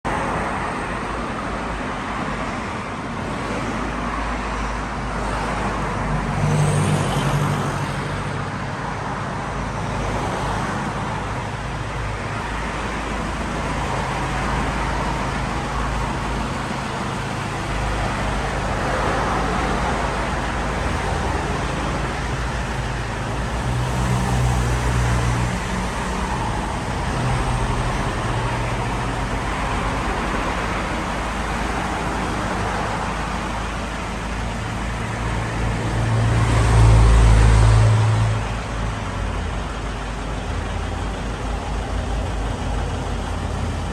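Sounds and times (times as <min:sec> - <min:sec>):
road traffic noise: 0:00.0 - 0:43.9
vehicle engine running: 0:10.0 - 0:37.6, 0:38.4 - 0:43.9.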